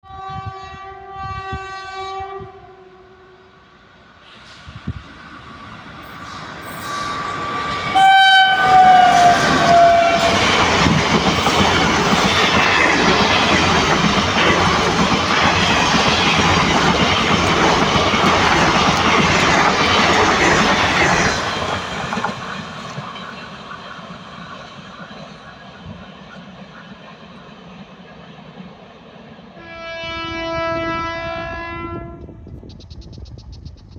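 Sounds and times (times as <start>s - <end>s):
train horn: 0.0s - 3.6s, 6.6s - 11.4s, 29.6s - 32.5s
train wheel and rail noise: 0.1s - 33.9s.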